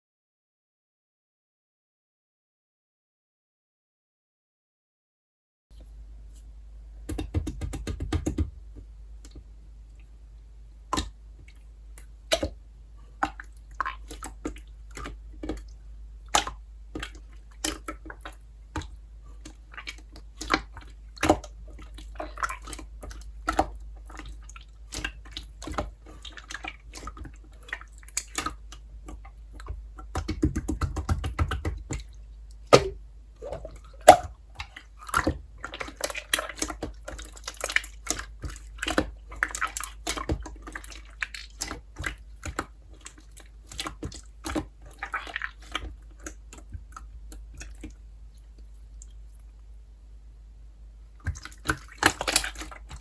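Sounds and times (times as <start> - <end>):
slime squishing: 10.8 - 49.6, 51.2 - 53.0.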